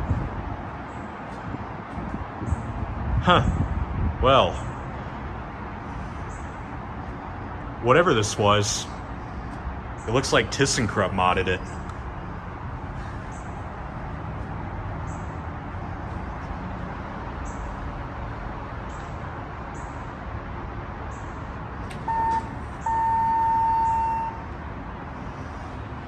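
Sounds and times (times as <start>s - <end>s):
traffic rumble: 0.0s - 26.0s
electronic beep: 22.1s - 24.4s.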